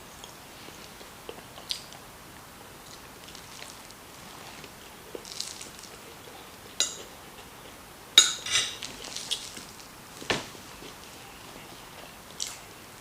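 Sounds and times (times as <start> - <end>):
cutlery clinking on a plate: 6.8 - 7.1, 8.2 - 9.4.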